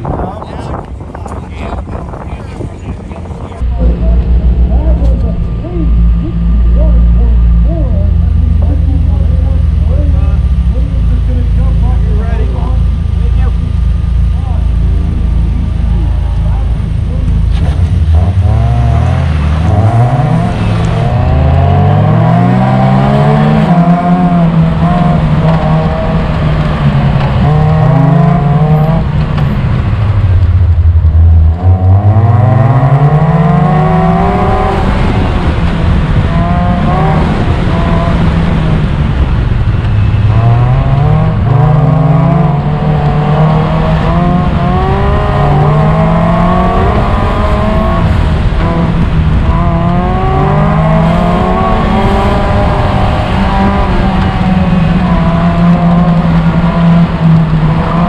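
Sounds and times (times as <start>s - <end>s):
race car engine revving: 0.0s - 58.0s.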